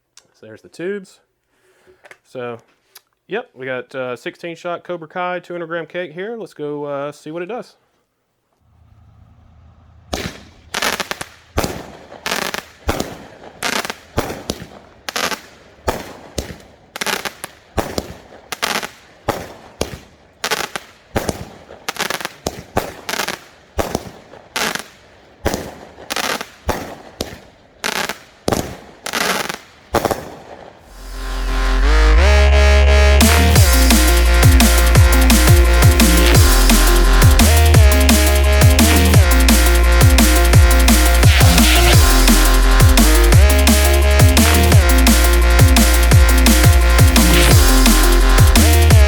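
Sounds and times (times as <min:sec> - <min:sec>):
firework bangs: 0:08.7 - 0:30.9
electronic music: 0:30.9 - 0:49.0.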